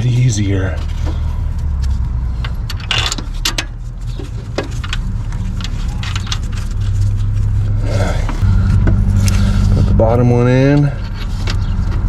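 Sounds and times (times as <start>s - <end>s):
steady low rumble: 0.0s - 12.0s
metal parts clicking and clinking: 2.4s - 6.9s.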